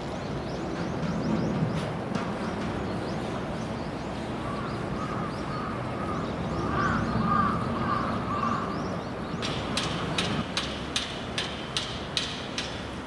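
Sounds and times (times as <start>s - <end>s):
crows cawing: 4.5s - 8.7s.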